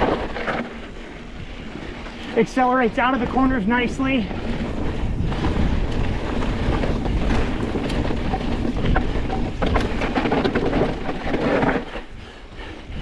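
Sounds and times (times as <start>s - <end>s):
bike clicks and rattles: 0.0s - 13.0s
bike tyres rolling on dirt: 0.0s - 13.0s
wind rushing over microphone: 0.0s - 13.0s.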